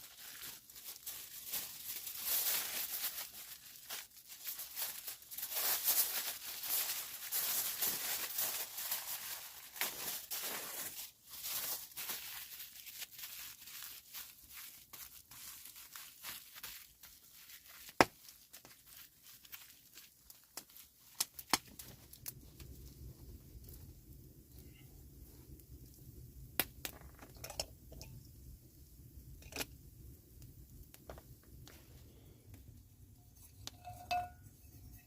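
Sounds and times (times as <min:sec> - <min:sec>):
rustling and tearing: 0:00.0 - 0:22.4.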